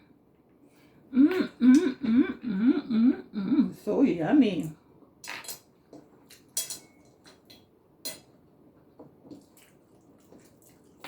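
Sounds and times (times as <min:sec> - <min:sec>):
utensils clicking on dishes: 0:06.3 - 0:08.3.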